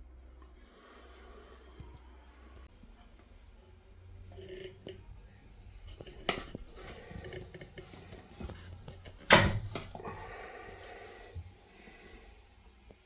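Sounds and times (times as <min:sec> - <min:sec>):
scraping and rubbing: 0:05.8 - 0:10.4.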